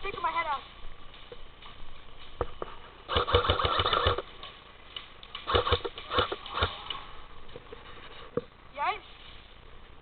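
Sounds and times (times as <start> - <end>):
airsoft gun rattling bursts: 3.1 - 4.3, 5.1 - 6.9.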